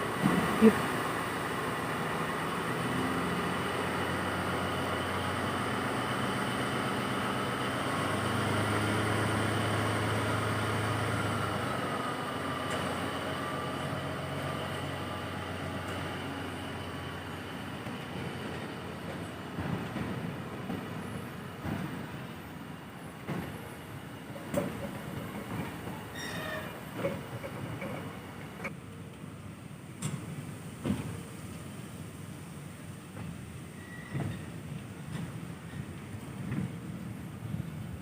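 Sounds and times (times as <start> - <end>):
locomotive engine drone: 0.0 - 29.9
sharp train knocks: 23.2 - 23.6, 30.0 - 31.2.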